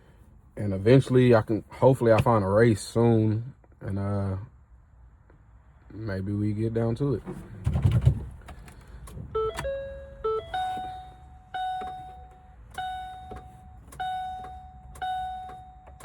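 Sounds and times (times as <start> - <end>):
dashboard warning chime: 9.3 - 16.0.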